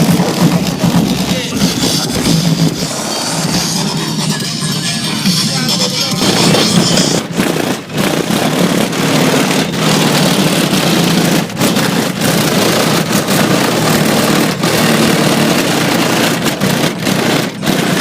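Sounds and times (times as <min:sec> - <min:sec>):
strong low hum: 0:00.0 - 0:11.7
heavily distorted loud music: 0:00.0 - 0:16.4.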